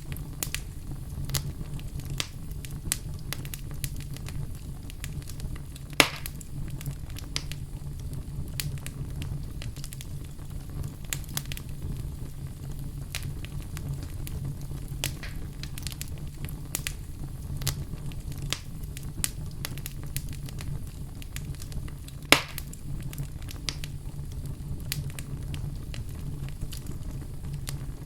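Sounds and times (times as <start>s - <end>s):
low rumble of flame: 0.0s - 28.0s
wood fire crackling: 0.0s - 28.0s
loud fire pop: 5.9s - 6.4s, 15.0s - 16.1s, 22.2s - 22.8s.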